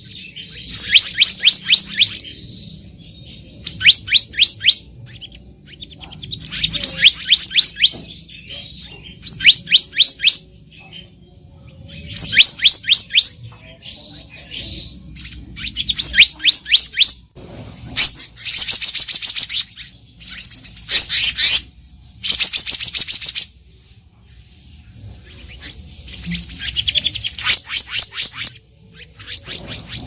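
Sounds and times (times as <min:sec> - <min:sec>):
bird whistling rising notes: 0:00.5 - 0:02.4.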